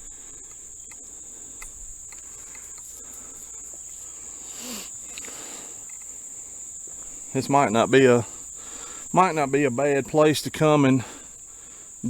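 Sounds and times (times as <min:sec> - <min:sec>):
faint ticks: 0:00.0 - 0:07.4
insects chorus: 0:00.0 - 0:12.0
rustle: 0:00.0 - 0:12.0.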